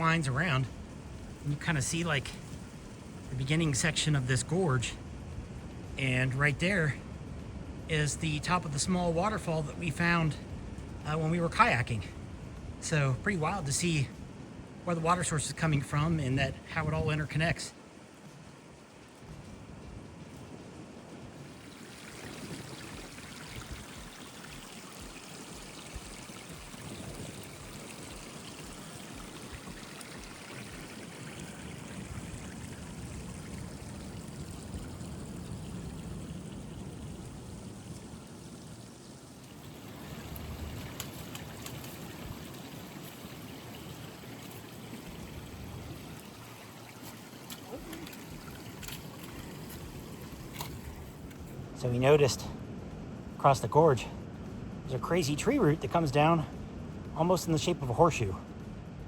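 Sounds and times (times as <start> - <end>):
creek water rushing: 0.0 - 52.4.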